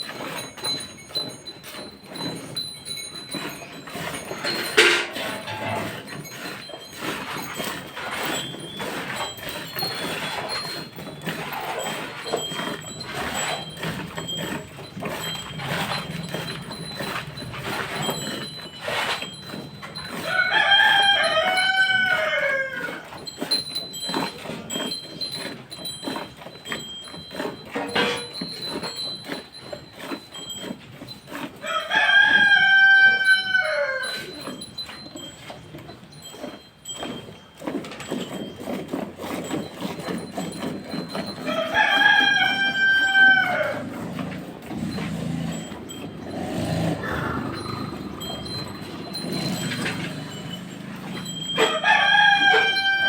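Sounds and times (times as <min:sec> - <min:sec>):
rooster crowing: 0:20.2 - 0:23.0, 0:31.6 - 0:34.2, 0:41.4 - 0:43.9, 0:51.6 - 0:53.0.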